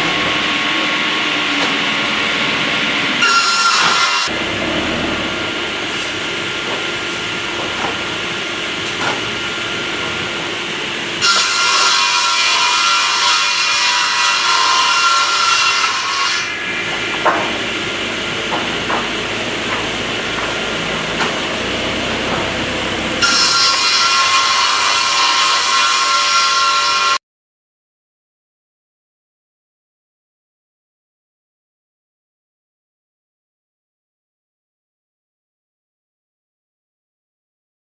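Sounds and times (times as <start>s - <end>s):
saw cutting wood: 0.0s - 27.2s.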